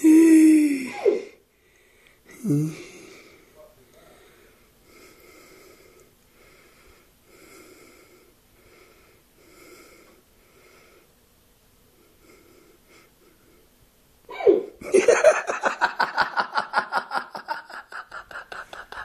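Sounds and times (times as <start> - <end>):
man breathing heavily with wheeze: 0.0 - 11.2, 11.9 - 13.8, 17.3 - 19.0.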